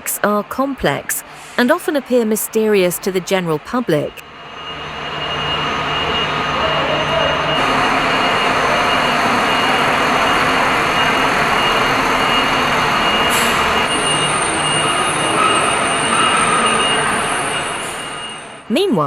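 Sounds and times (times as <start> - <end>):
loud mechanical noise with whine: 0.0 - 18.7
second higher whine: 4.2 - 18.7.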